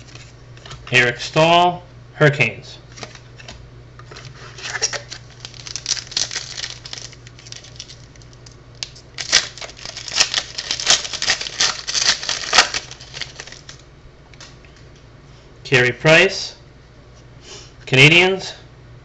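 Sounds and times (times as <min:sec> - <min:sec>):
trading cards clicking and rustling: 0:02.9 - 0:13.8.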